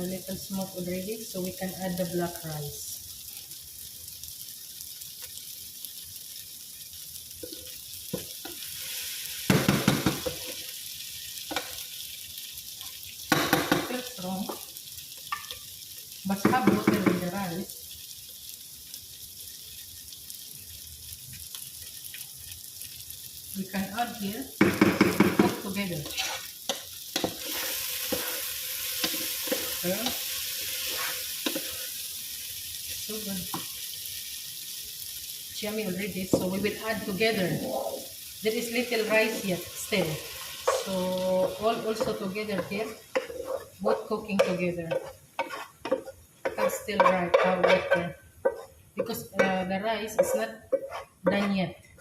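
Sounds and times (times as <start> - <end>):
vegetables sizzling in frying pan: 0.0 - 52.0
utensil knocking against pan: 24.6 - 25.6
scraping in pan: 24.9 - 32.0, 40.0 - 49.6, 50.2 - 51.6.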